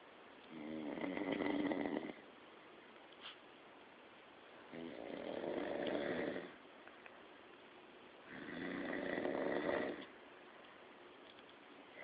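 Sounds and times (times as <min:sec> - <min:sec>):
person snoring: 0:00.5 - 0:02.2, 0:04.7 - 0:06.6, 0:08.3 - 0:10.1.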